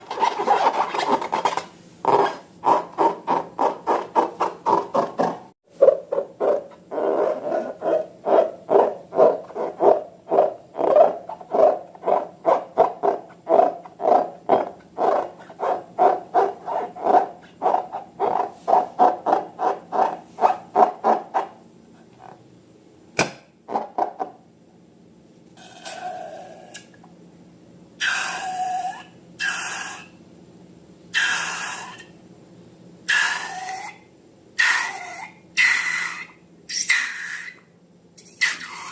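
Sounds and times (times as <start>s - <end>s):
rubber balloon squeaking: 0.0s - 21.5s.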